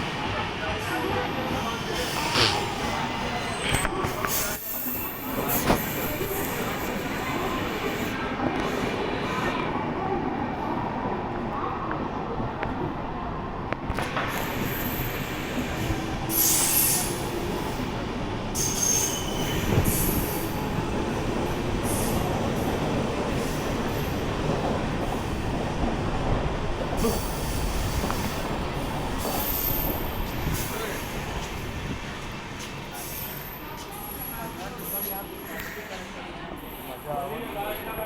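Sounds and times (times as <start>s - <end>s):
wheels squealing on rails: 14.2s - 25.6s, 26.9s - 37.8s.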